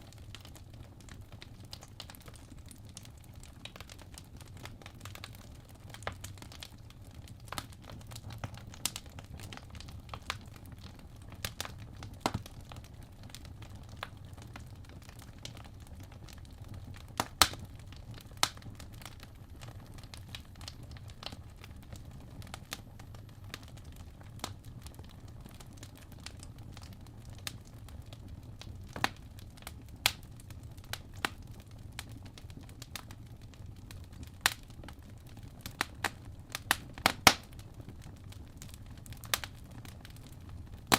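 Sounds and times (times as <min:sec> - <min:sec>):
fire crackling: 0:00.0 - 0:40.9
low steady hum: 0:16.0 - 0:32.9.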